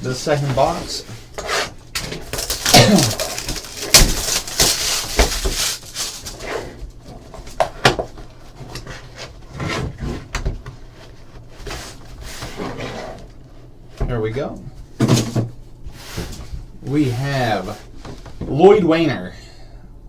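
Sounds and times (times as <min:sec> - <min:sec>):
cardboard and wrapping tearing: 0:02.0 - 0:06.8.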